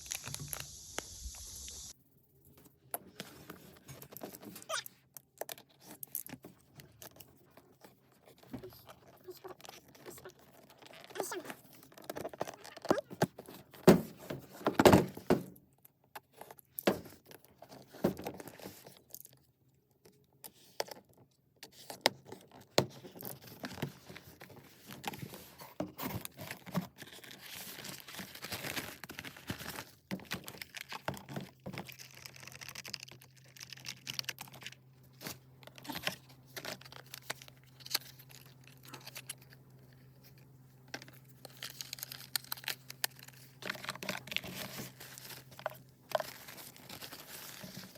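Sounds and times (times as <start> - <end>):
packaging crinkling and tearing: 0.0 - 1.4, 3.1 - 13.8, 22.3 - 47.9
knocks and thunks of items: 12.9 - 15.6.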